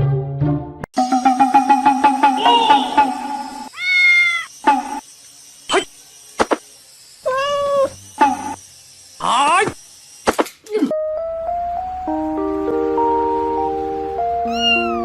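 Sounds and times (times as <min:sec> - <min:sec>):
cat meowing: 0:03.7 - 0:04.5, 0:07.3 - 0:07.9, 0:14.4 - 0:15.0.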